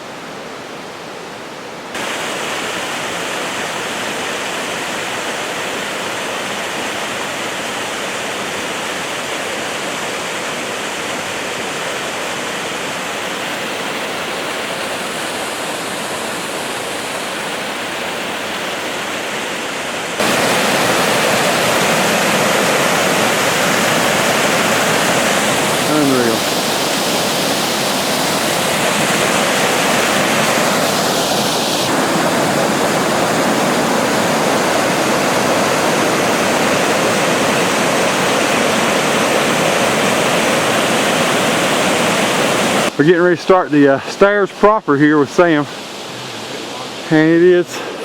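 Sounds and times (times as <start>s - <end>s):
waterfall rushing: 0.0s - 48.0s.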